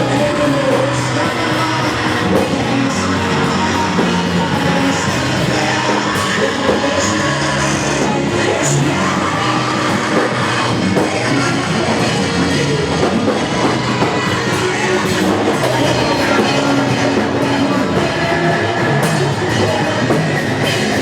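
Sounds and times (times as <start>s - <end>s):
live band playing: 0.0s - 21.0s.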